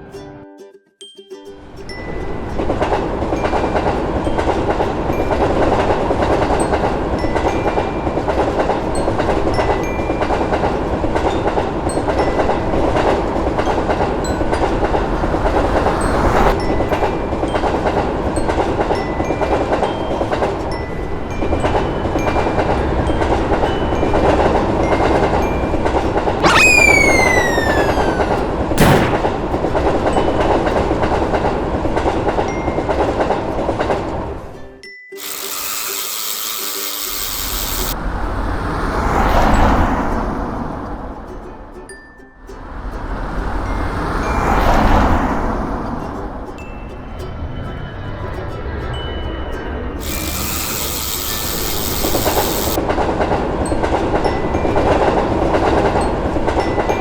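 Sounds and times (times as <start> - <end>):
train rumbling on track: 2.2 - 26.4, 28.4 - 34.5, 51.7 - 57.0
sharp click: 26.4 - 29.5, 35.2 - 38.0.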